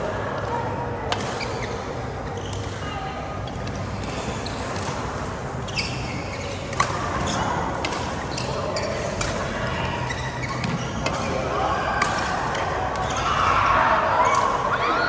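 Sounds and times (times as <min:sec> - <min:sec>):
badminton rackets hitting shuttlecock: 0:01.1 - 0:01.6, 0:06.7 - 0:09.5, 0:10.1 - 0:13.3.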